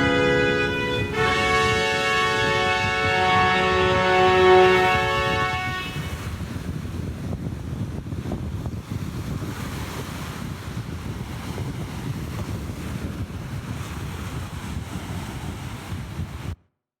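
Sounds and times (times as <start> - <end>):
ocean surf rushing: 0.0 - 6.4.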